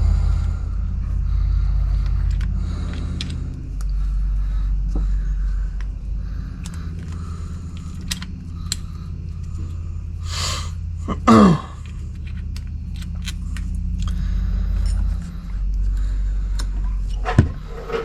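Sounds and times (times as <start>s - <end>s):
steady low hum: 0.0s - 18.0s
small metal parts clicking: 2.0s - 4.0s, 5.8s - 10.8s, 11.8s - 15.9s
person sneezing: 10.2s - 11.8s.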